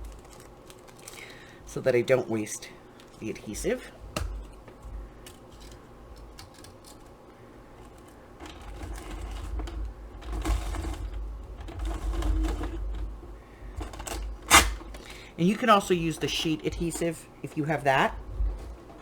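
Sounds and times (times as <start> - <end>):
hand-cranked machine rattling: 8.4 - 13.1, 13.7 - 19.0.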